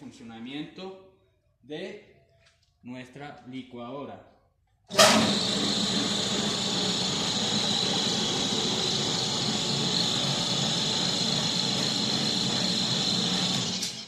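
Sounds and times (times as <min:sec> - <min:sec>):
blender motor whining: 0:04.9 - 0:14.0.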